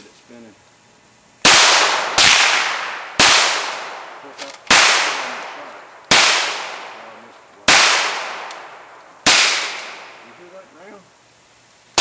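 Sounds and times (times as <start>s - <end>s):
gunshots cracking: 1.4s - 10.3s.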